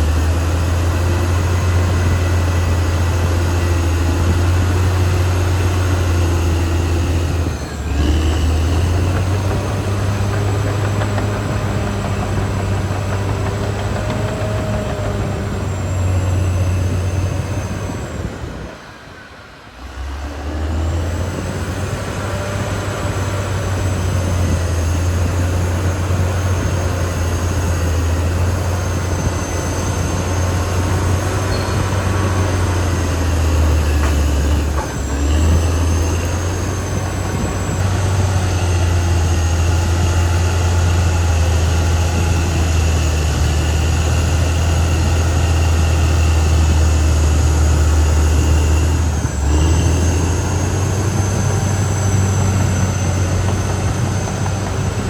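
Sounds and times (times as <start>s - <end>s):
bulldozer diesel engine running: 0.0s - 55.0s.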